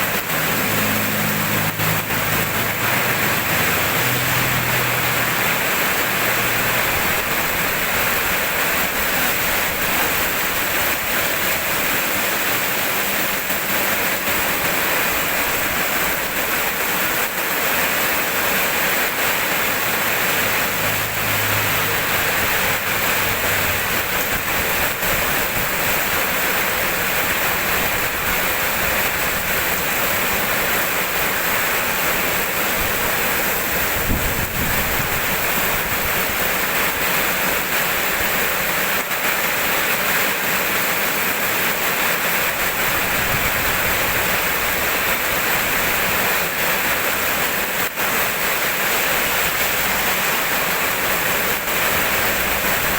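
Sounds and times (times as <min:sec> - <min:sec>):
heavy rainfall: 0:00.0 - 0:52.9.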